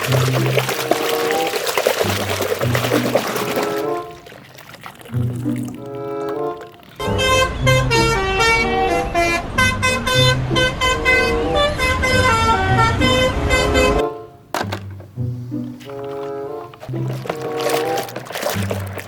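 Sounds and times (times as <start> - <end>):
multi-tone bus horn melody: 5.8 - 14.5.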